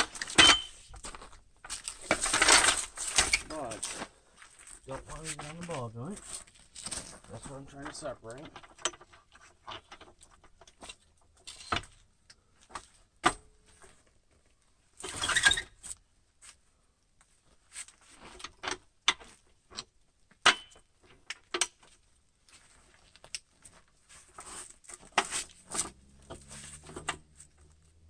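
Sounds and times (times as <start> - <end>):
metal tools clinking: 0.0 - 0.9
loud noisy scrape: 24.4 - 27.9.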